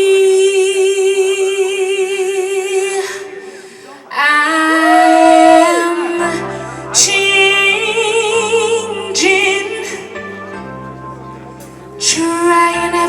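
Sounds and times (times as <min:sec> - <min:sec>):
woman singing slow ballad: 0:00.0 - 0:03.5, 0:04.1 - 0:11.4, 0:12.0 - 0:13.0
low sustained backing track: 0:05.7 - 0:13.0.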